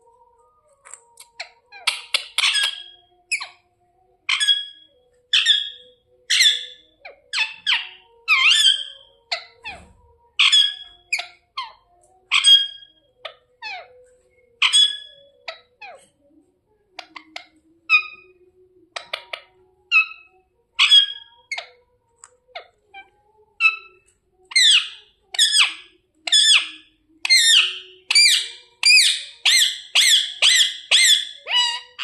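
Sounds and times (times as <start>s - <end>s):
parrot screeching: 1.4s - 3.5s, 4.3s - 6.8s, 7.4s - 11.7s, 14.6s - 16.0s, 19.0s - 21.7s, 22.6s - 32.0s.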